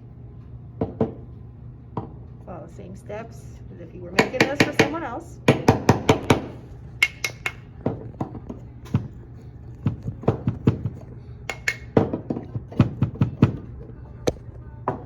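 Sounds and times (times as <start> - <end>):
low hum: 6.3 - 15.0.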